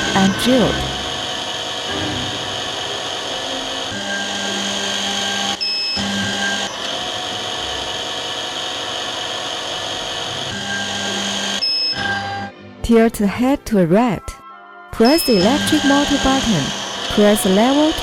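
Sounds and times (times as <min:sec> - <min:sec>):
drill motor running: 0:00.0 - 0:12.5, 0:15.0 - 0:18.0
short electronic beep: 0:11.6 - 0:12.4, 0:15.0 - 0:17.2.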